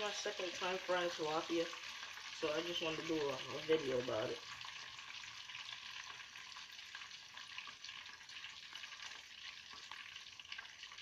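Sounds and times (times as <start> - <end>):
fish sizzling in hot oil: 0.0 - 11.0.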